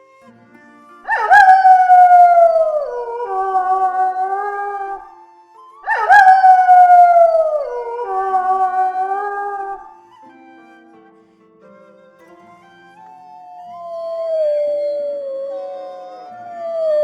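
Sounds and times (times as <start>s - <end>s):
wolf howling: 1.1s - 5.1s, 5.8s - 10.0s, 13.5s - 17.0s.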